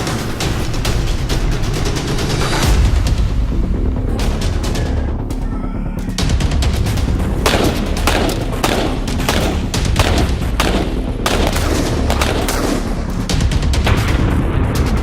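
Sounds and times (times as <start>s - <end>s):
rapid gunfire: 6.1s - 15.0s.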